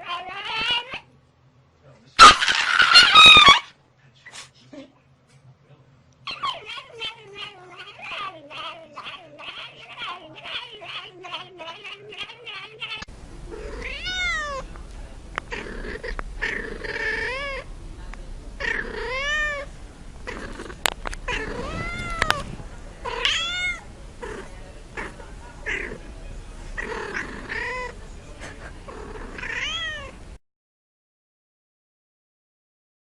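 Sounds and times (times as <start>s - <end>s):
cat meowing: 6.3s - 14.7s, 18.6s - 19.7s, 21.3s - 22.5s, 23.1s - 23.8s, 29.3s - 30.2s.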